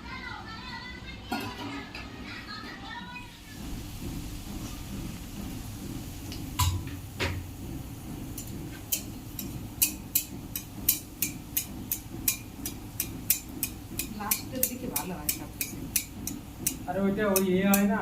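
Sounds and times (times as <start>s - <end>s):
metal spatula striking a pan: 6.6s - 7.5s, 8.4s - 18.0s.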